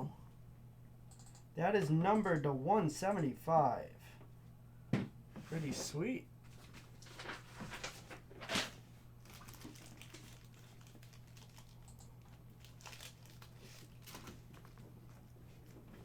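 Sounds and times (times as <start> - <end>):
trading cards and wrapper rustling: 6.5 - 14.8.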